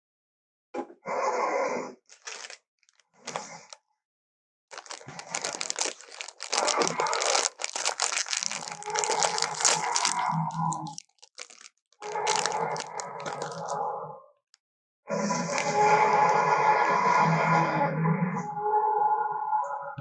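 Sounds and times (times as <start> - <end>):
creature crunching and crackling: 2.1 - 3.8, 4.7 - 14.1, 15.3 - 16.3.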